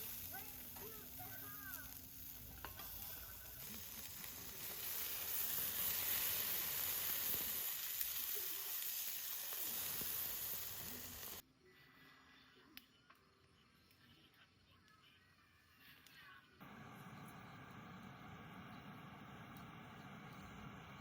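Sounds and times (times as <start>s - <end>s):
food sizzling on a grill: 0.0s - 11.4s.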